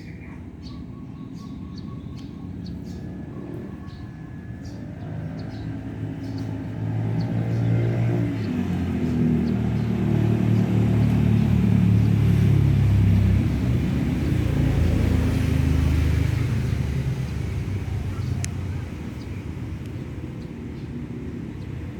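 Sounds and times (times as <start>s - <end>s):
vehicle engine running: 2.9s - 21.9s.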